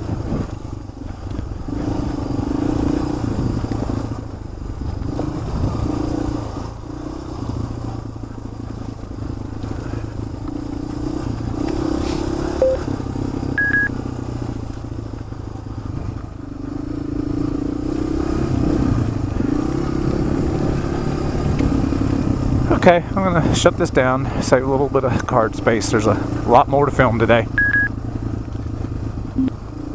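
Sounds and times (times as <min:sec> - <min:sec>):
motorcycle engine running: 0:00.0 - 0:29.9
short beeps: 0:12.6 - 0:12.9, 0:13.6 - 0:14.0, 0:27.5 - 0:27.9, 0:29.4 - 0:29.6.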